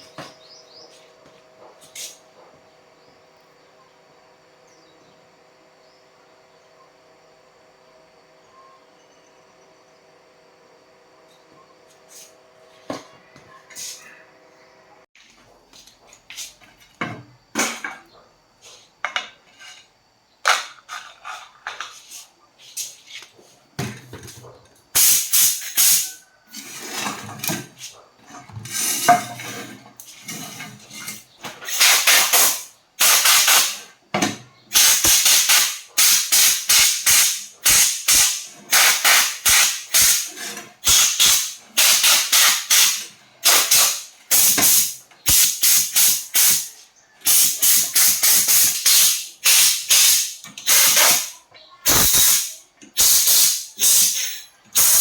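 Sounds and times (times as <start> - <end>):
short bursts of loud hissing: 25.0 - 26.2, 31.6 - 33.9, 34.7 - 55.0.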